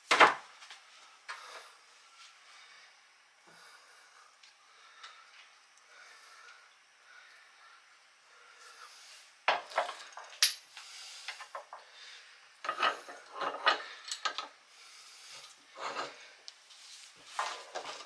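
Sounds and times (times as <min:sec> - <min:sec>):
metal parts knocking and clattering: 0:09.5 - 0:10.6, 0:12.6 - 0:14.5.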